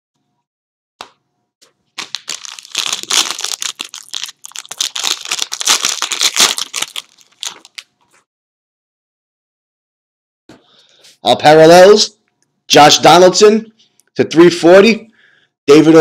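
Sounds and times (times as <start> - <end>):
cardboard packaging crinkling and tearing: 2.0 - 8.0.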